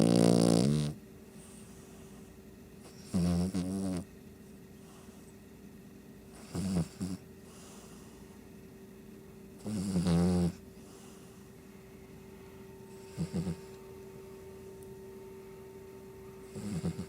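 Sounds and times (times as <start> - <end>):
dog snoring: 0.0 - 2.2, 2.8 - 4.1, 6.3 - 8.2, 9.6 - 11.5, 13.0 - 13.8, 16.4 - 17.0.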